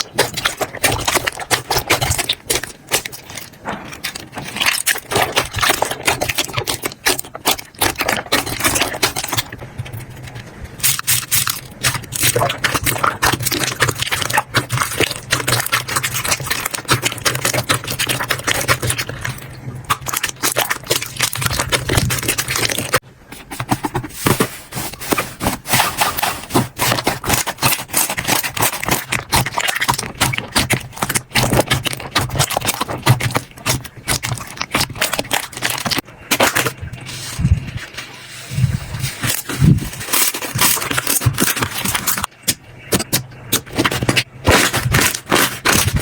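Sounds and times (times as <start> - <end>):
slime squished by hand: 0.0 - 23.0, 25.4 - 37.4.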